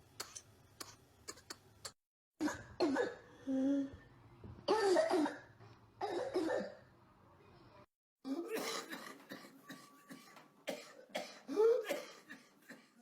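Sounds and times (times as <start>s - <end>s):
person coughing: 8.3s - 13.0s.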